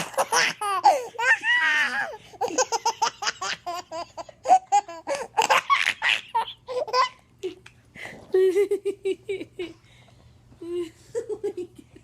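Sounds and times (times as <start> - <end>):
baby laughing: 0.0 - 7.6.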